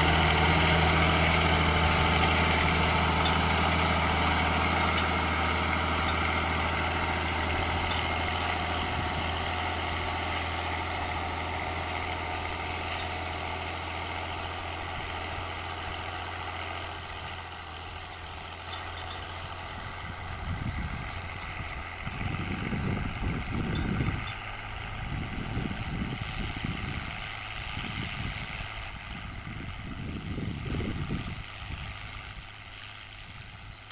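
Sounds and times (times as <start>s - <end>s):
tractor diesel engine running: 0.0s - 33.9s.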